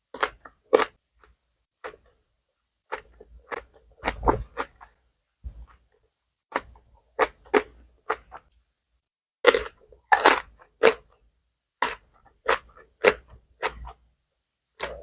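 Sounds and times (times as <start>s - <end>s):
wet crunchy chewing: 9.5s - 11.1s.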